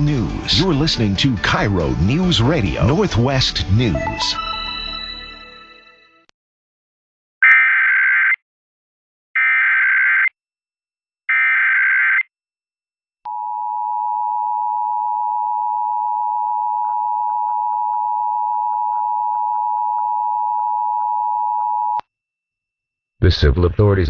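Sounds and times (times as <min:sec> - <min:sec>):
digital header code squawks: 0:03.8 - 0:05.7
steady two-tone attention signal: 0:03.8 - 0:06.0.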